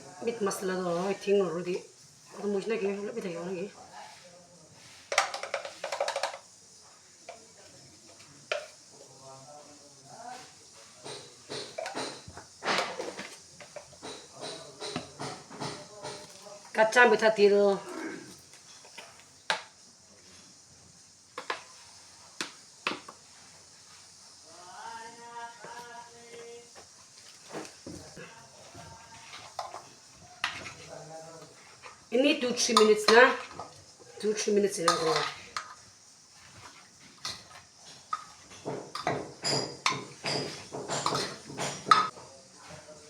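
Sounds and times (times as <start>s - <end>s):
utensil knocking against metal pot: 5.1s - 6.4s, 11.0s - 12.9s, 13.6s - 16.3s, 38.1s - 42.1s
metal utensil clinking against pot: 34.9s - 35.8s, 38.1s - 42.1s.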